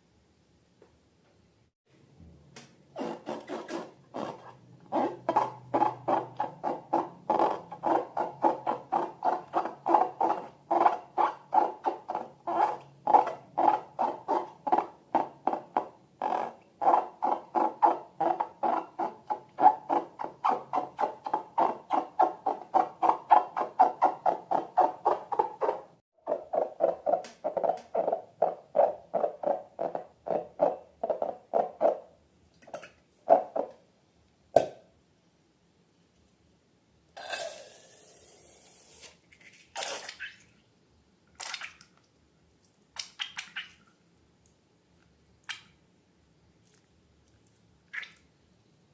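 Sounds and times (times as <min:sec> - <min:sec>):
rubber balloons squeaking: 0:02.9 - 0:15.7, 0:16.3 - 0:25.9.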